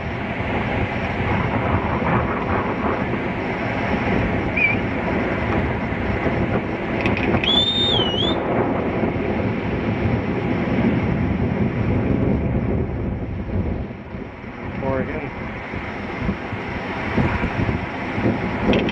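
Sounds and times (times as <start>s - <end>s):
waves crashing: 0.0s - 18.9s
wind on microphone: 0.0s - 18.9s
high wavering whistle: 4.6s - 4.8s, 7.4s - 8.4s.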